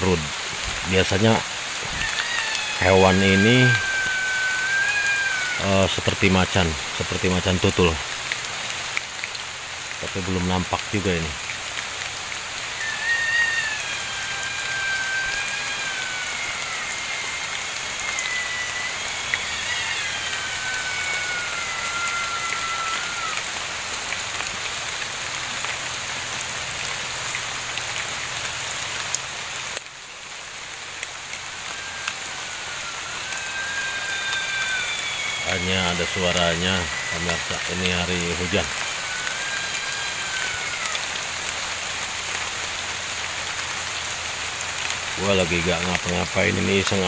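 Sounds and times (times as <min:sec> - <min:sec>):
animal wailing cries: 0:00.0 - 0:08.2, 0:12.3 - 0:23.9, 0:30.7 - 0:42.4
steady rain: 0:00.0 - 0:47.0.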